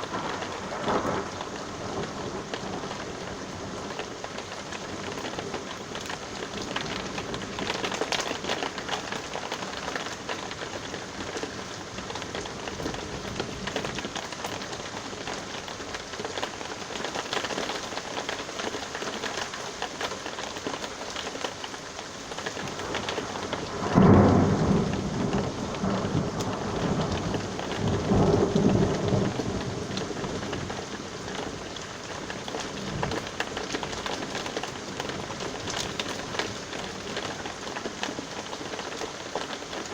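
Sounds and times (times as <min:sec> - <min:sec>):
thunder rumbling: 0:00.0 - 0:08.1, 0:22.6 - 0:37.6
steady rain: 0:00.0 - 0:39.9.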